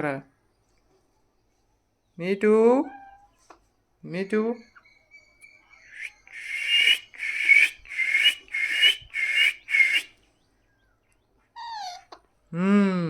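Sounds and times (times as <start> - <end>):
parrot screeching: 6.0 - 10.1.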